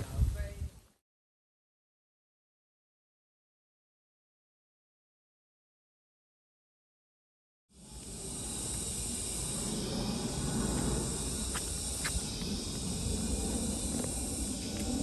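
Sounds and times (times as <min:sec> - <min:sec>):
low rumble: 0:07.8 - 0:15.0
steady high hiss: 0:07.8 - 0:15.0.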